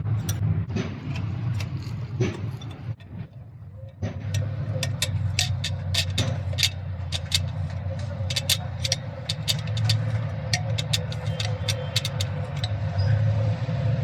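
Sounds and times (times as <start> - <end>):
sharp clicks: 4.3 - 12.8.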